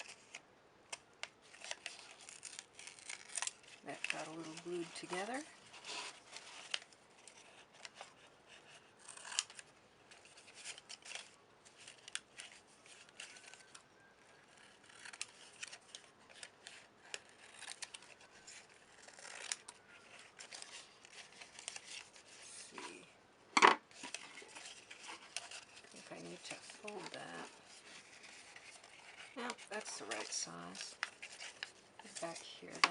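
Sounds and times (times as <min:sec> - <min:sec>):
paper rustling: 0:00.0 - 0:23.1, 0:23.8 - 0:32.9
scissors snipping paper: 0:08.7 - 0:09.6, 0:14.5 - 0:22.1.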